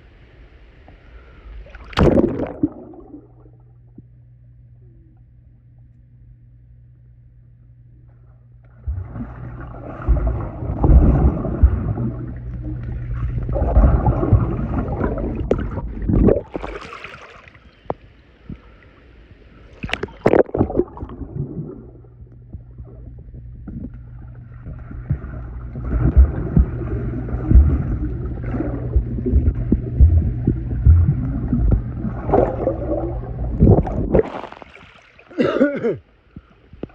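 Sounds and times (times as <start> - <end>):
water splashes: 1.6 - 3.5, 8.8 - 17.9, 23.8 - 35.4
pool water sloshing and gurgling: 1.6 - 3.8, 8.1 - 36.9.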